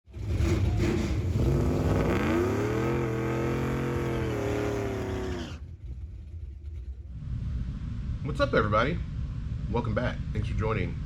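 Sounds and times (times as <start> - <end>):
engine revving: 0.1 - 5.8.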